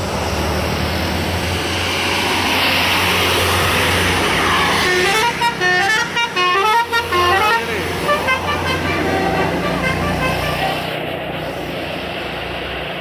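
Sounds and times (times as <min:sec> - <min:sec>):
bus engine pulling uphill: 0:00.0 - 0:13.0
multi-tone horn playing a melody: 0:04.8 - 0:11.0.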